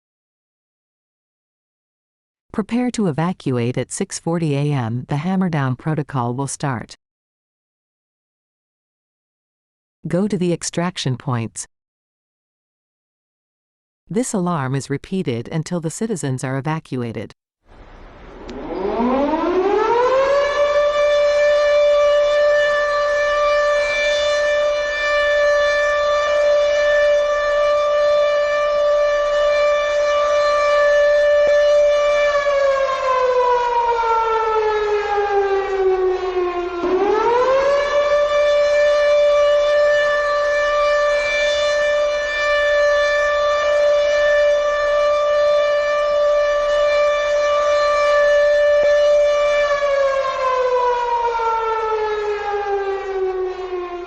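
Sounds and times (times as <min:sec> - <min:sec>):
civil defense siren wailing: 0:17.8 - 0:54.0.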